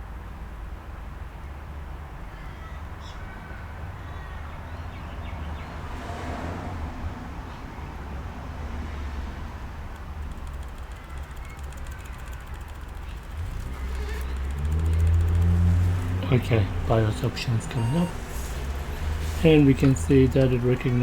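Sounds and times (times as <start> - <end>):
faint high chirps: 17.7 - 18.4.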